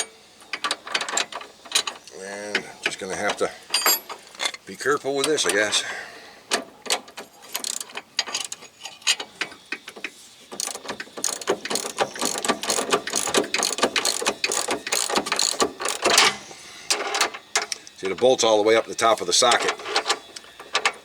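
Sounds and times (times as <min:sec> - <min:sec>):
hand ratchet clicking: 0:07.6 - 0:08.6, 0:10.6 - 0:16.3.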